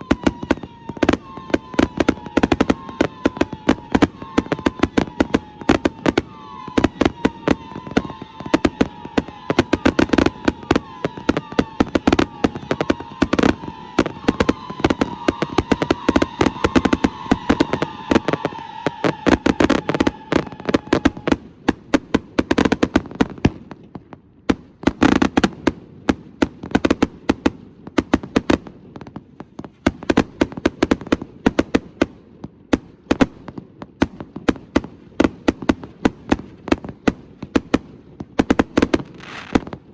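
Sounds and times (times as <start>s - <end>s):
fireworks whistling: 0.0s - 22.8s, 38.4s - 39.9s
fireworks bangs and crackles: 0.0s - 39.9s.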